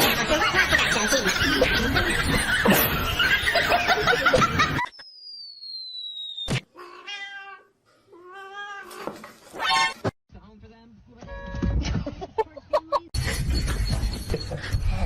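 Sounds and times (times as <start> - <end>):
falling whistle-like tone: 4.8 - 6.6
cat meowing: 6.7 - 9.1.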